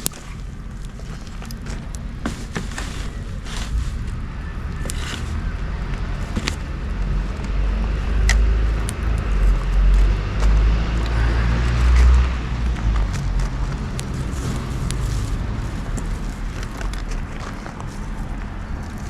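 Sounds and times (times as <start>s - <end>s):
bonfire crackling and popping: 0.0s - 10.6s, 11.7s - 19.0s
loud low rumble: 3.1s - 18.9s.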